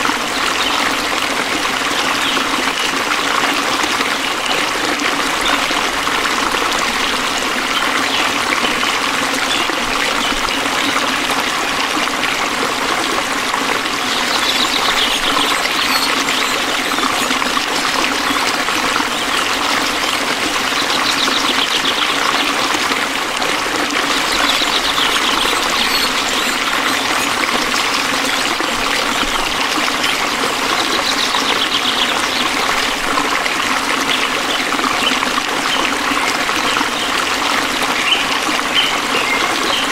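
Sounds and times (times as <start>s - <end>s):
stream water trickling: 0.0s - 39.9s
frogs croaking: 13.9s - 22.5s, 24.0s - 32.3s
rapidly pulsed high trill: 14.3s - 18.5s, 24.2s - 28.6s.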